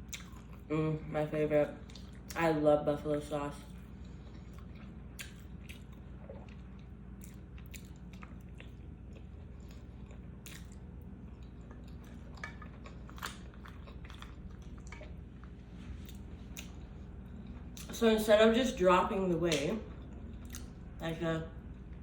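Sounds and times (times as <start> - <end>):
chewing and biting: 0.0 - 0.7, 4.0 - 17.9, 19.5 - 20.8.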